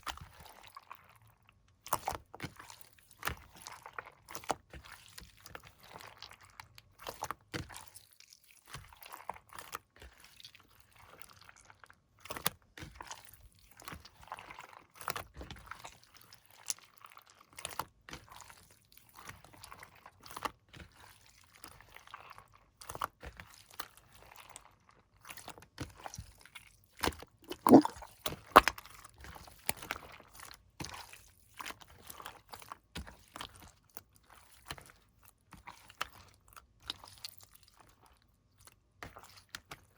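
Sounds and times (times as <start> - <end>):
slime squished by hand: 27.5 - 28.0.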